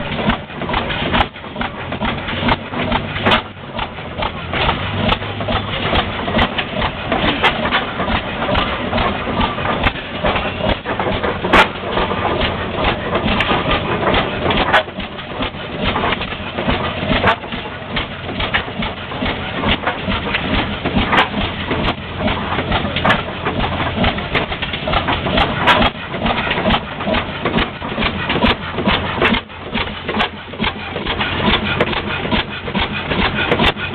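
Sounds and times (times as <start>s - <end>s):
engine mechanical clatter: 0.0s - 33.9s
sharp clicks and knocks: 0.0s - 33.9s.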